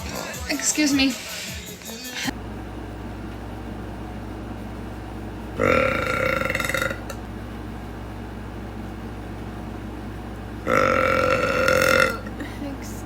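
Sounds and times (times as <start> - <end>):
woman burping: 5.6 - 7.2, 10.7 - 12.7.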